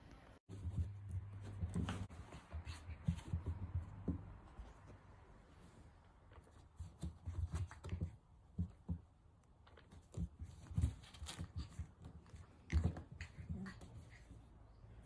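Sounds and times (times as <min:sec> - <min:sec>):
puppy scrambling on floor: 0:00.5 - 0:04.6, 0:09.7 - 0:14.4.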